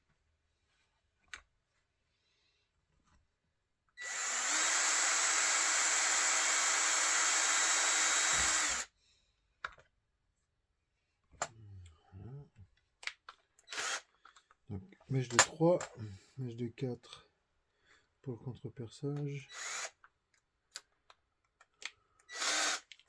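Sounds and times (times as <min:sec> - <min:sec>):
power tool whining: 0:04.0 - 0:08.9
small clicks and handling knocks: 0:09.6 - 0:10.0, 0:12.7 - 0:14.6, 0:20.0 - 0:22.3.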